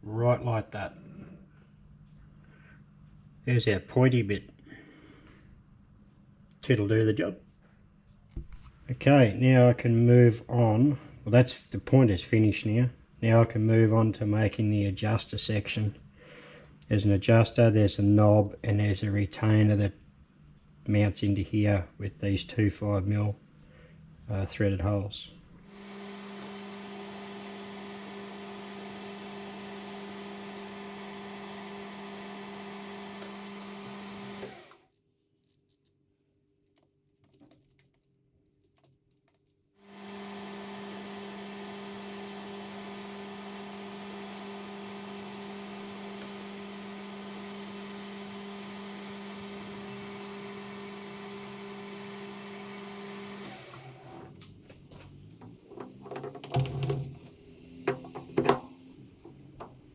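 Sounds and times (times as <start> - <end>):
machine tool motor humming: 25.6 - 34.8, 39.8 - 54.2.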